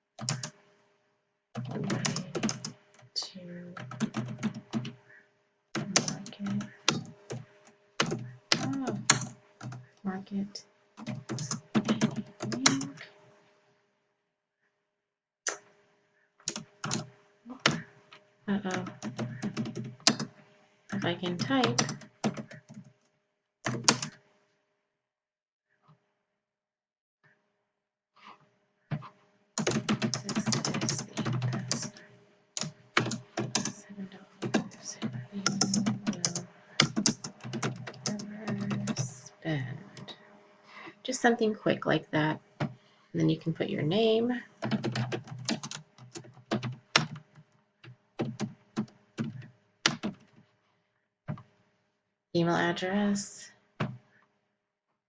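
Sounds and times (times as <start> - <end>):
keyboard typing: 0.2 - 0.6, 1.6 - 3.1, 3.7 - 5.0, 5.8 - 9.9, 11.0 - 13.1, 16.5 - 17.9, 18.5 - 22.9, 23.7 - 24.2, 28.9 - 32.0, 32.6 - 33.8, 34.4 - 40.2, 44.6 - 50.4, 53.8 - 54.0.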